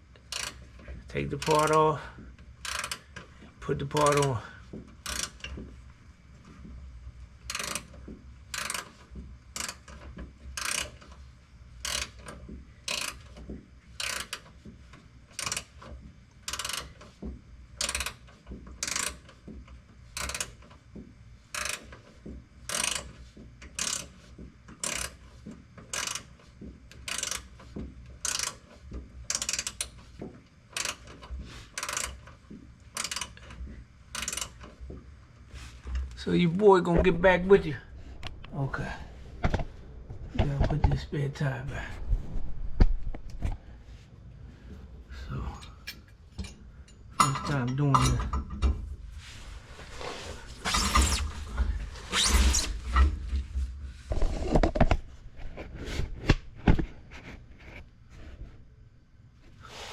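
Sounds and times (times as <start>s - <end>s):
ratchet wrench clicking: 0.2s - 0.7s, 1.4s - 1.8s, 2.6s - 3.3s, 5.0s - 5.5s, 7.5s - 9.0s, 9.6s - 11.2s, 11.8s - 12.3s, 12.9s - 13.4s, 14.0s - 14.5s, 15.3s - 15.8s, 16.4s - 17.1s, 17.8s - 19.3s, 20.2s - 20.6s, 21.5s - 22.0s, 22.7s - 23.1s, 23.7s - 24.1s, 24.8s - 25.2s, 25.9s - 26.3s, 27.0s - 27.5s, 28.2s - 28.6s, 29.3s - 30.0s, 30.7s - 32.3s, 32.9s - 34.8s.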